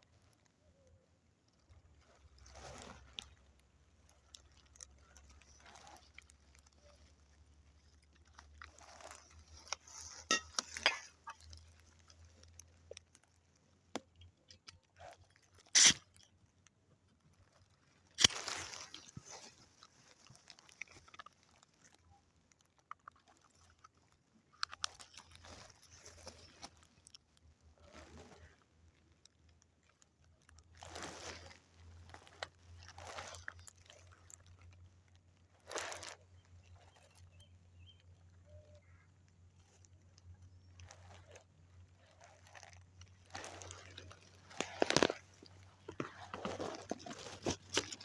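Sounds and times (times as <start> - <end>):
twigs snapping: 17.6 - 21.9, 42.4 - 48.0
footsteps crunching dry leaves: 42.5 - 48.0.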